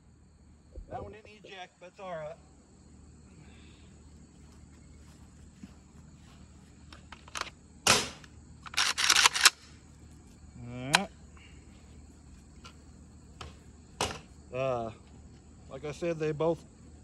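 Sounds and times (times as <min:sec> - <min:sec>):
shotgun action clacking: 0:07.2 - 0:09.7.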